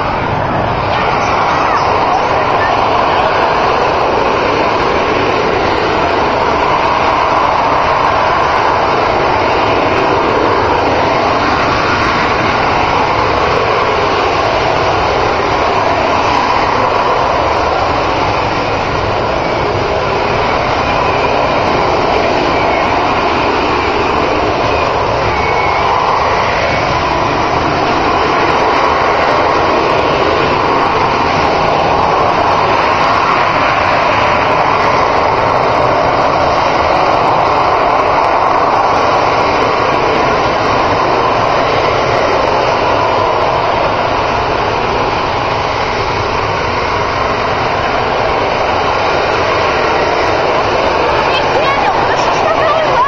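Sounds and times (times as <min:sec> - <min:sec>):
aircraft engine roar: 0:00.0 - 0:53.0.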